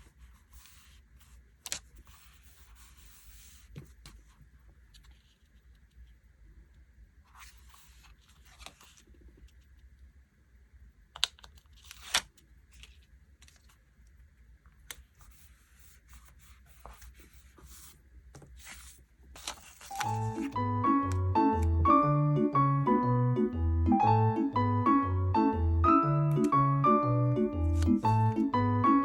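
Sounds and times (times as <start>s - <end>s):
paper rustling and peeling: 11.5s - 13.8s, 14.9s - 20.6s
piano-like music: 19.9s - 29.0s.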